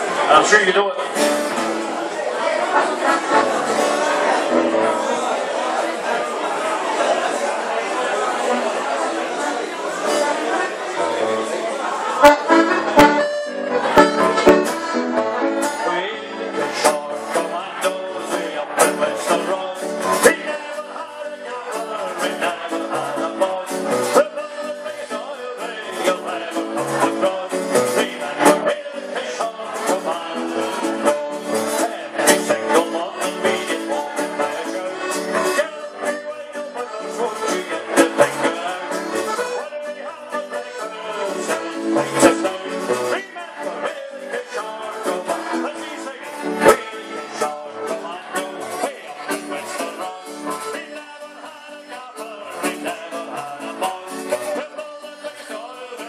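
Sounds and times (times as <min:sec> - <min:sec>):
accordion: 0:00.0 - 0:56.0
folk dance band playing: 0:00.0 - 0:56.0
guitar: 0:00.0 - 0:56.0.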